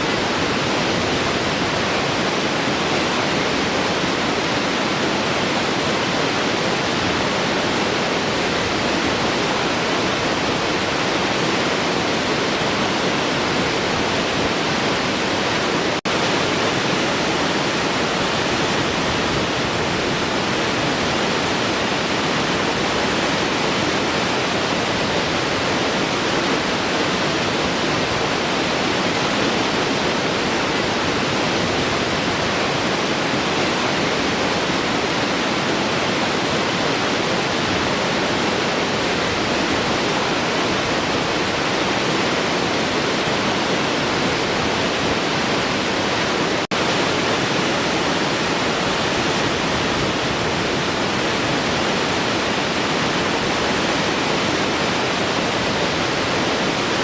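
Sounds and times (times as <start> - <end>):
waterfall roaring: 0.0 - 57.0.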